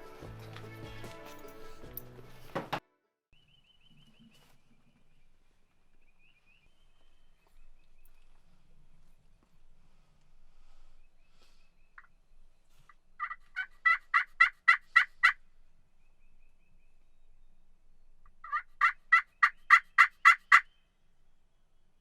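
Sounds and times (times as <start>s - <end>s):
turkey yelps: 13.2s - 15.4s, 18.4s - 20.7s.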